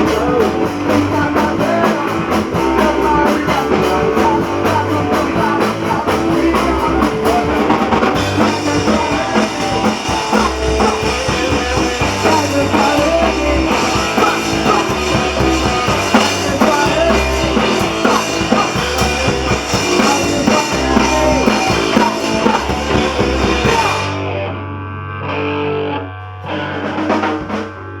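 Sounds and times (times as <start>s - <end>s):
punk rock band playing live: 0.0s - 28.0s.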